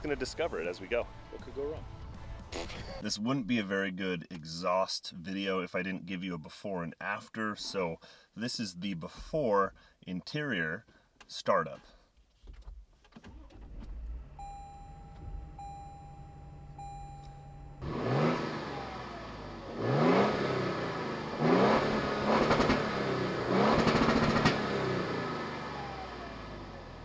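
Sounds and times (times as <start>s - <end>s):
truck engine idling and revving: 14.0s - 27.0s.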